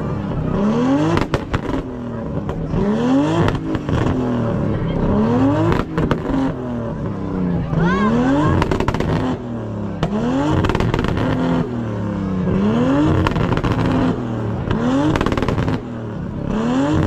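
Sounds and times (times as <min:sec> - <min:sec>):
car engine revving: 0:00.0 - 0:17.0
exhaust pops and crackles: 0:00.0 - 0:17.0.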